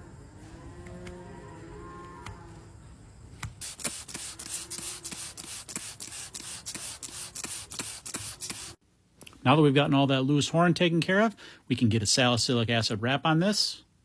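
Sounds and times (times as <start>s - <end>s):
hoof knife scraping horn: 3.6s - 8.8s.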